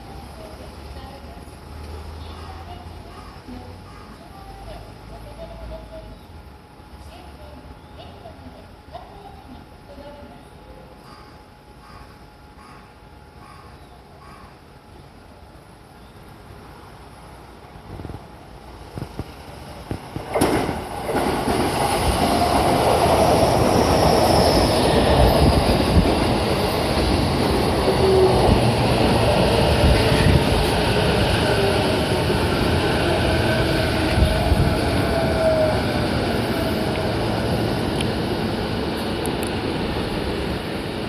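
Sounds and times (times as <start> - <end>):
wheels rumbling on rails: 17.8 - 41.0
electric train whining: 19.1 - 41.0.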